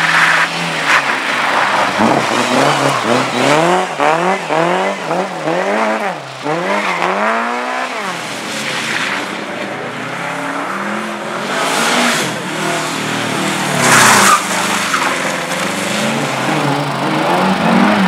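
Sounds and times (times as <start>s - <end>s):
rally car engine revving: 0.0s - 18.0s
tyres skidding: 0.0s - 18.0s.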